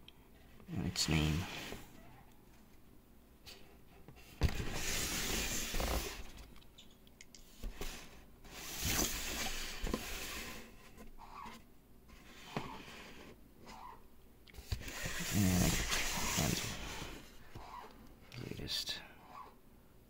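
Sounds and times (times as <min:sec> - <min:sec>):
cardboard and paper rustling: 0:14.6 - 0:17.2.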